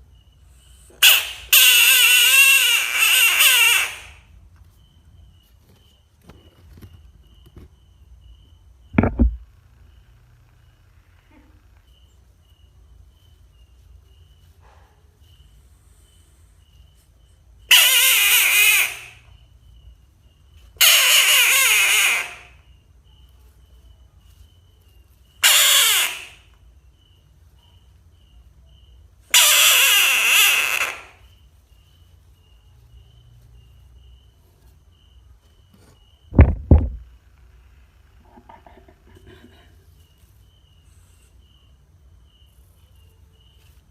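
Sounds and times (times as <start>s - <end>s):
frog screaming: 1.0s - 4.3s, 17.7s - 19.4s, 20.8s - 22.7s, 25.4s - 26.6s, 29.3s - 31.4s
sharp low thumps: 8.9s - 9.4s, 36.3s - 37.1s.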